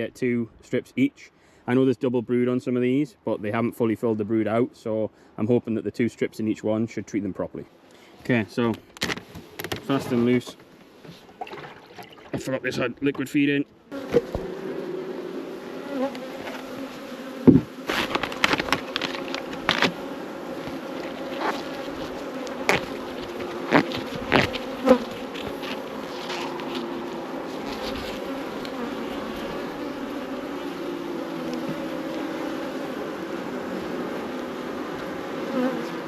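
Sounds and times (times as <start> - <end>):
bees buzzing: 13.9 - 36.0.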